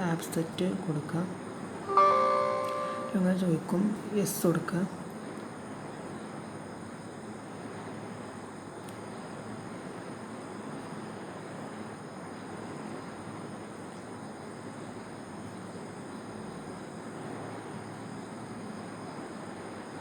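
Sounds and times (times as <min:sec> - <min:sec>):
faint high steady tones: 0:01.9 - 0:04.5.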